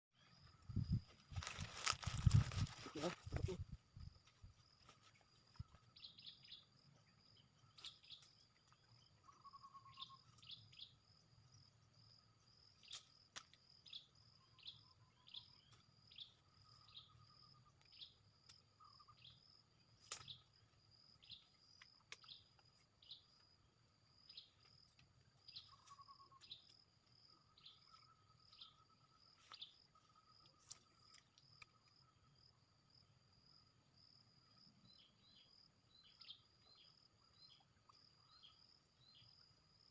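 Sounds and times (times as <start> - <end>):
insect chirps: 0.2 - 39.9
low insect trill: 0.2 - 39.9.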